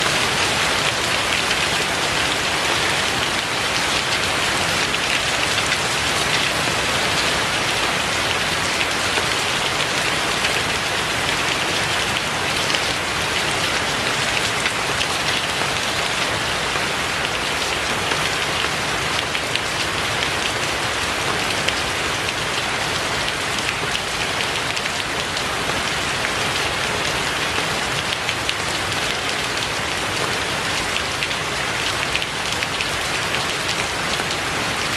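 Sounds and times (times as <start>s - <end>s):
rain hiss: 0.0s - 34.9s.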